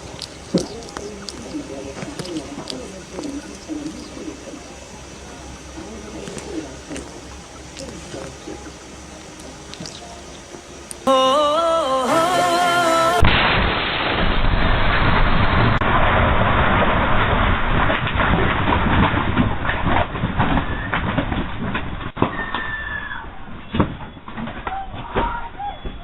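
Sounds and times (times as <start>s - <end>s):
crackling rumble: 0.0s - 11.1s, 13.2s - 22.5s.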